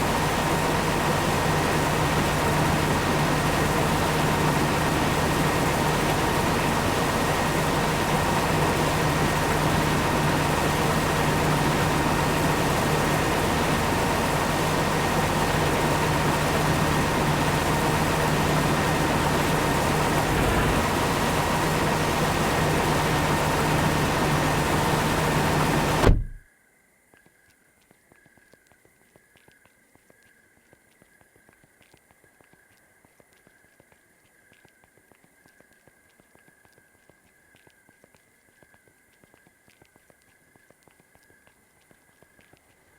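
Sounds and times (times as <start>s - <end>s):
harvesting machinery hum and whine: 0.0s - 26.4s.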